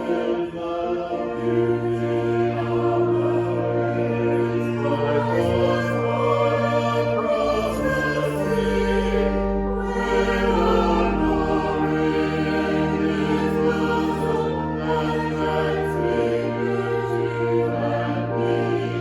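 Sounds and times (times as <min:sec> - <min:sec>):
choir singing sustained chords: 0:00.0 - 0:19.0
bass line: 0:02.7 - 0:16.1.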